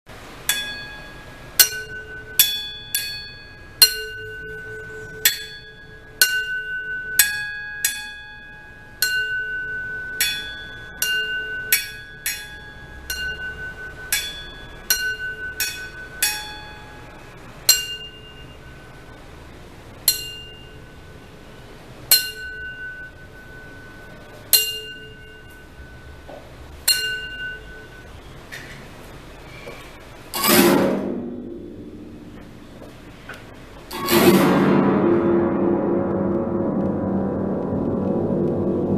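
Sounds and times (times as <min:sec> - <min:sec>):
saucepan lids struck ringing: 0:00.5 - 0:16.8.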